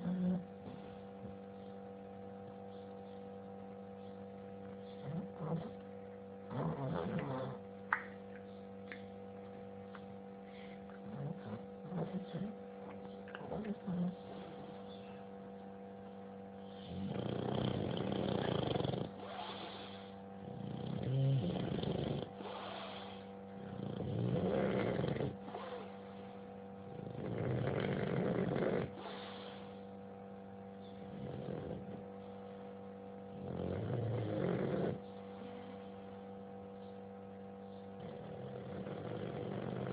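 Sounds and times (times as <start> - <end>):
snoring: 0.0 - 0.5, 5.0 - 5.7, 6.5 - 7.6, 11.1 - 12.6, 16.7 - 26.0, 26.9 - 29.7, 31.0 - 32.0, 33.3 - 35.0, 38.0 - 39.9
electrical hum: 0.0 - 39.9.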